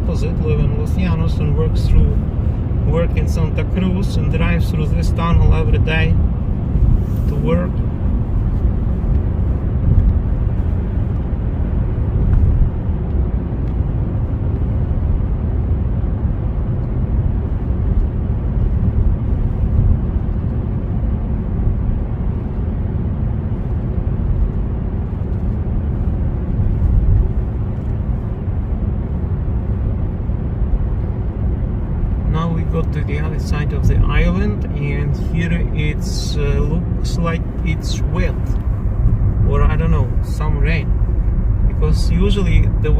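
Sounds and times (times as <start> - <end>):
car engine rumble: 0.0 - 42.9
road noise inside car: 0.0 - 42.9.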